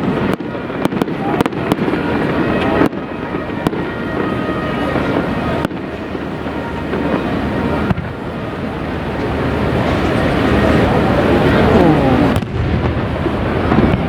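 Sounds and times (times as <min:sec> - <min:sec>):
fireworks crackling and rumbling: 0:00.0 - 0:14.0
sharp firework bang: 0:11.5 - 0:14.0.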